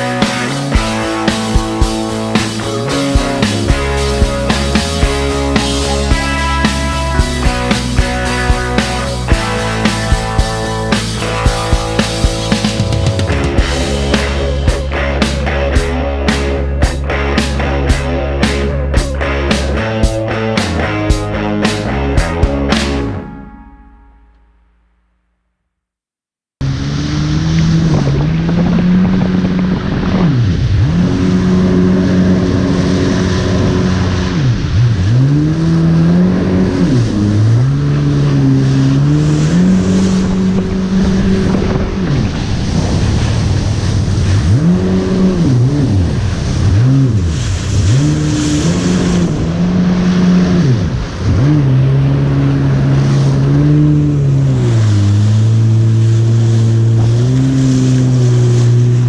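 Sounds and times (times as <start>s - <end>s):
water spray: 0.0s - 23.2s
jet ski engine revving: 0.0s - 23.5s, 26.6s - 59.0s
wind rushing over microphone: 38.2s - 59.0s.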